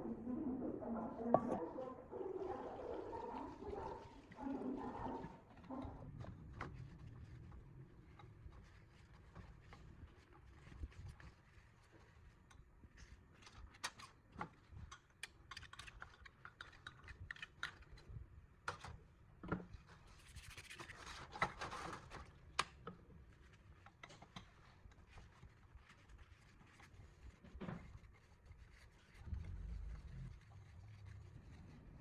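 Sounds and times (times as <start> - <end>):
scraping and rubbing: 1.4 - 6.2, 24.5 - 32.0.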